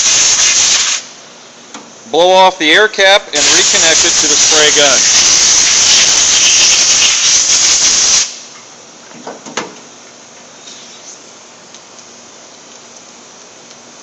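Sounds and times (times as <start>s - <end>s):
air blowgun hissing: 0.0s - 1.1s, 3.4s - 8.5s.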